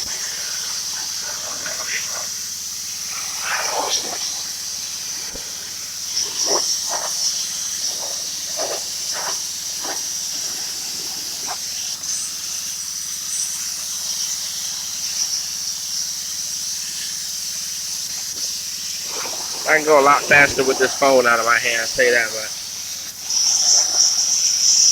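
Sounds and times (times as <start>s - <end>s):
pressure washer spray hissing: 0.0s - 24.9s.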